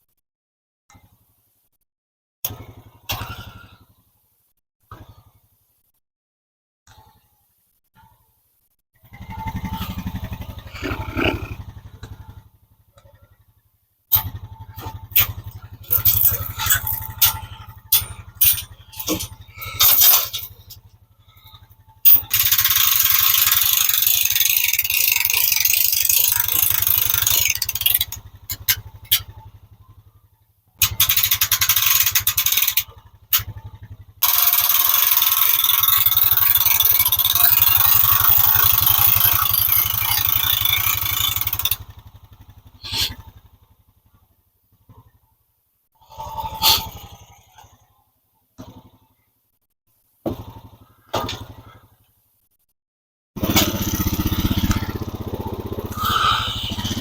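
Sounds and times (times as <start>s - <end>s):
sawmill engine humming: 9.5s - 12.4s, 14.8s - 29.1s, 42.6s - 43.3s, 53.4s - 57.0s
saw blade rasping through log: 42.8s - 43.2s, 55.9s - 57.0s.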